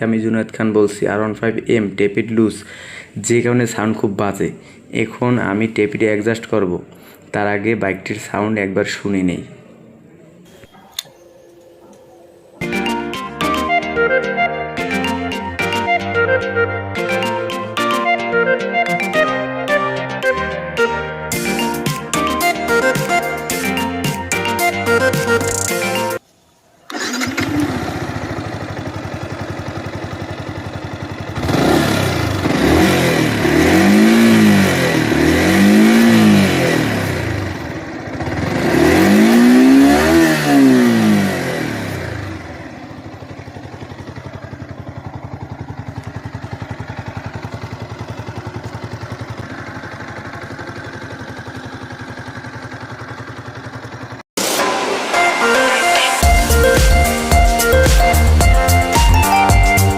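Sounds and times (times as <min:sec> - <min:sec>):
motorcycle engine idling and revving: 0:26.9 - 0:54.6.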